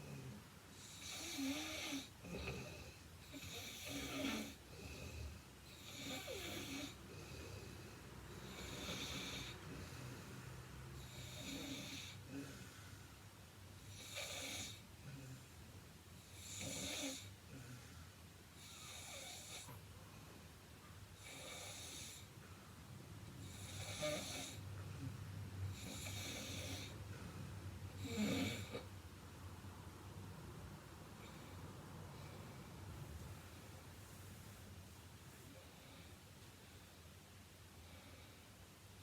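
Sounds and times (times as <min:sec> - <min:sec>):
woman snoring: 0:00.0 - 0:07.6, 0:08.3 - 0:10.1, 0:11.0 - 0:12.6, 0:16.3 - 0:17.6, 0:21.2 - 0:22.3, 0:23.4 - 0:24.6, 0:25.7 - 0:27.0, 0:28.0 - 0:28.9.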